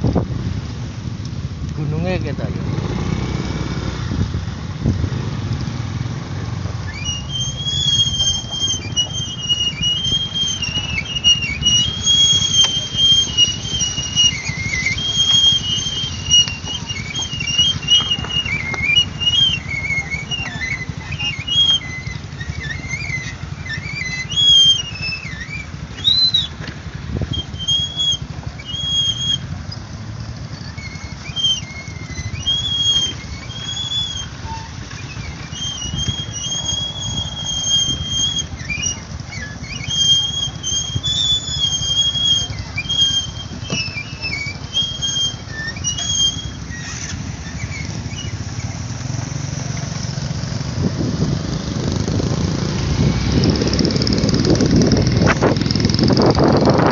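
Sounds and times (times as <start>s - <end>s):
high-pitched whistled calls: 6.6s - 50.6s.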